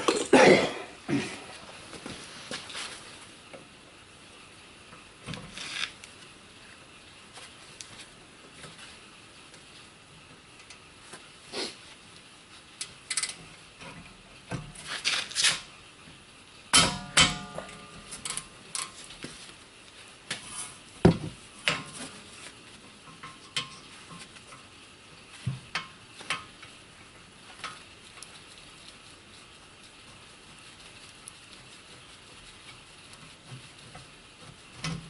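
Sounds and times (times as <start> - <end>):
loud ringing metal clanks: 16.8 - 18.0.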